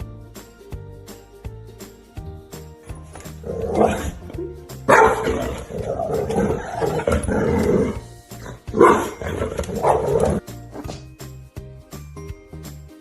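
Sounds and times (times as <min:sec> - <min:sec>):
background music: 0:00.0 - 0:13.0
dog barking: 0:04.9 - 0:07.0, 0:08.6 - 0:10.4.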